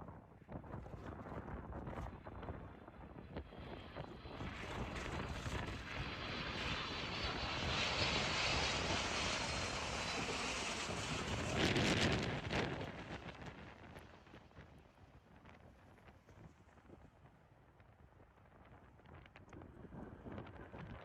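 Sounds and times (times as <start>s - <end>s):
jet airliner passing: 3.0s - 15.0s.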